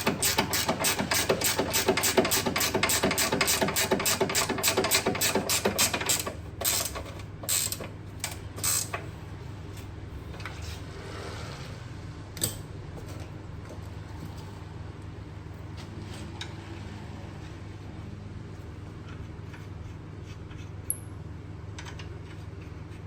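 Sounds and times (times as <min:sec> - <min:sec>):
ratchet wrench clicking: 0:00.1 - 0:07.8, 0:08.6 - 0:09.0.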